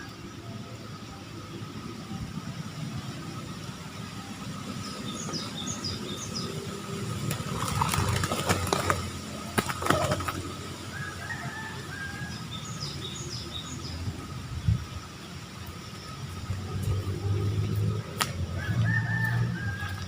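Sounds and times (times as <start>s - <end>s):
rustling and clattering: 7.3s - 10.5s.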